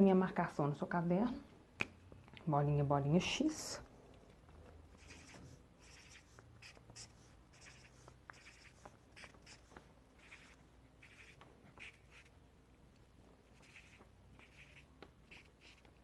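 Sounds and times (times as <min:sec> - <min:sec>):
pen scratching on paper: 0:04.9 - 0:12.4, 0:13.5 - 0:16.0.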